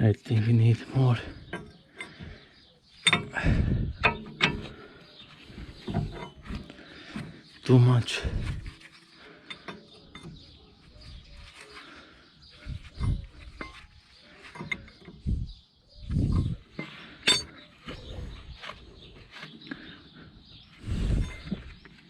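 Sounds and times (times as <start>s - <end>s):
metallic clinks of hand tools: 16.8s - 17.6s.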